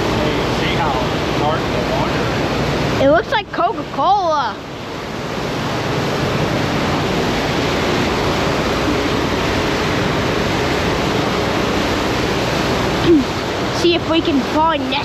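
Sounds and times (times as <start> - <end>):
boat wake and engine rushing: 0.0 - 15.0
faint steady hum: 0.0 - 15.0.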